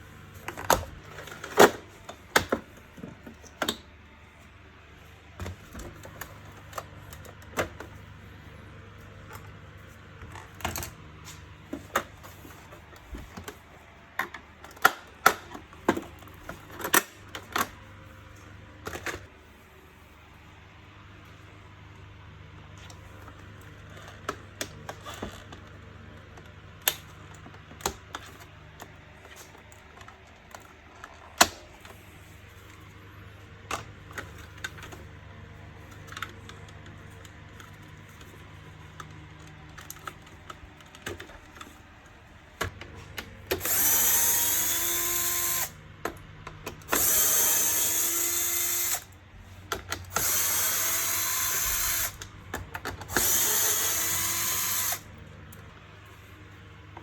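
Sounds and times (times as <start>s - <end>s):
plastic parts clicking and knocking: 0.5s - 3.9s, 11.7s - 17.8s, 35.8s - 55.7s
cordless screwdriver whirring: 43.6s - 45.8s, 46.8s - 49.2s, 50.0s - 52.3s, 53.0s - 55.1s.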